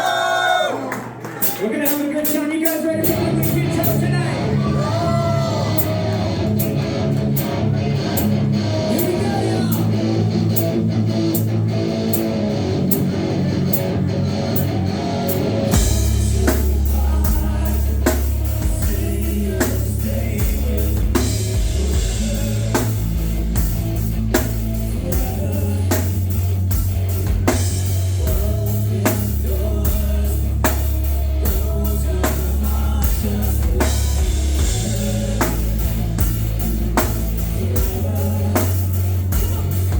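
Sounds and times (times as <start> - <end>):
drum kit: 1.2 - 39.9
bass guitar: 1.3 - 39.9
person singing: 3.0 - 6.7, 8.8 - 10.4, 14.7 - 23.5, 24.8 - 26.4, 28.1 - 39.9
electric guitar: 3.0 - 39.9.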